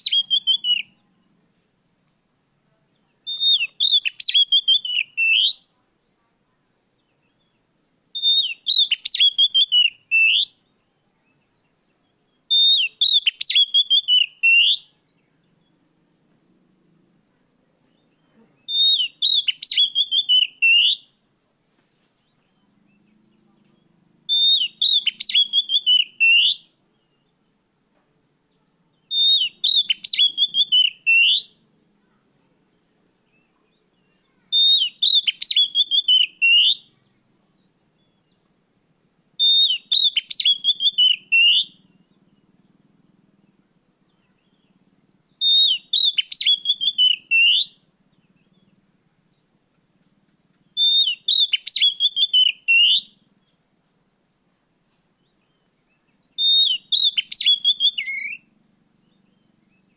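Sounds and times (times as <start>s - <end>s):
songbird singing whistled phrase: 0.0s - 1.0s, 3.2s - 5.7s, 8.2s - 11.4s, 12.4s - 15.0s, 18.0s - 21.2s, 24.3s - 27.2s, 29.0s - 31.6s, 33.2s - 38.4s, 39.4s - 42.1s, 45.4s - 48.8s, 50.6s - 53.2s, 55.5s - 58.5s.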